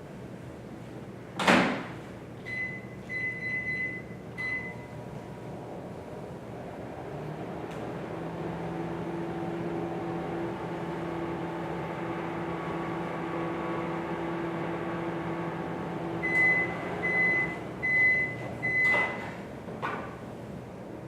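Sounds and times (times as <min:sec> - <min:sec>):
microwave oven humming: 0:00.0 - 0:21.0
microwave short high beeps: 0:02.5 - 0:05.0, 0:16.2 - 0:19.2.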